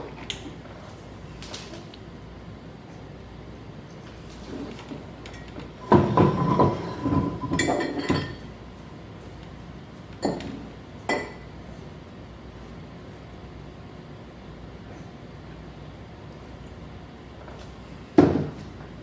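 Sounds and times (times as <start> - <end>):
glassware and dishes clinking: 5.3 - 8.5, 10.2 - 11.4.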